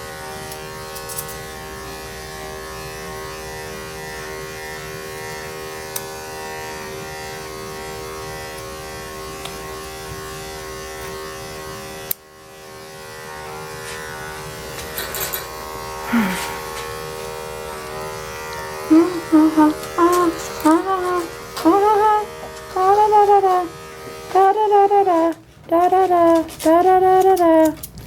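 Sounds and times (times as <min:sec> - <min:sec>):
electric clippers humming: 0:00.0 - 0:28.0.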